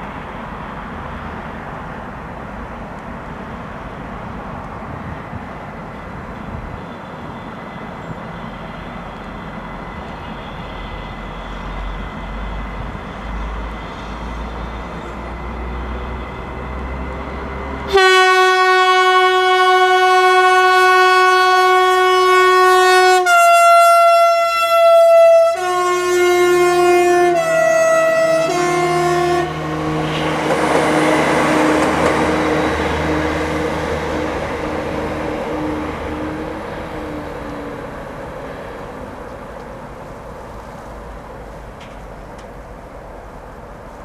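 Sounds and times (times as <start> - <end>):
diesel train engine rumble: 0.0 - 44.0
train horn blast: 17.9 - 36.7.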